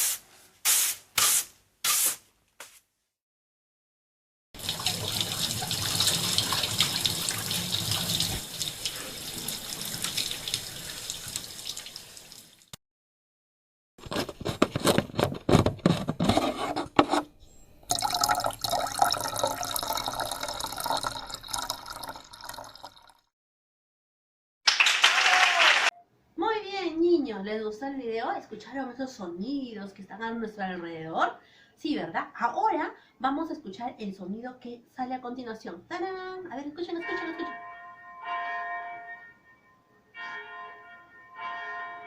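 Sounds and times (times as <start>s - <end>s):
tap running water splashing: 4.6s - 12.8s.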